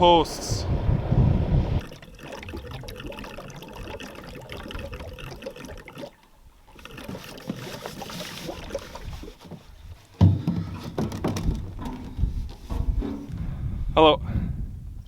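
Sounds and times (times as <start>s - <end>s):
liquid trickling and splashing: 1.8s - 10.0s.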